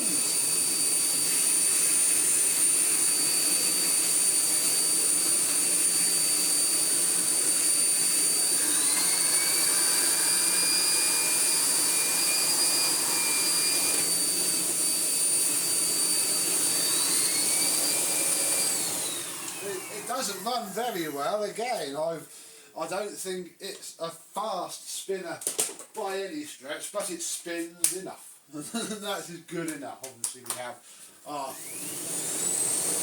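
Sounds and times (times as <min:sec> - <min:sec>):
vacuum cleaner motor whine: 0:00.0 - 0:21.3, 0:31.4 - 0:33.0
turbo brush head whine: 0:00.0 - 0:21.4.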